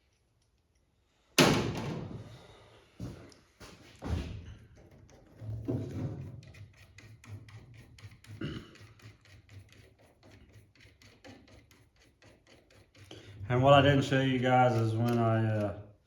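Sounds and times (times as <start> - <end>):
ratchet clicking: 6.4 - 15.7.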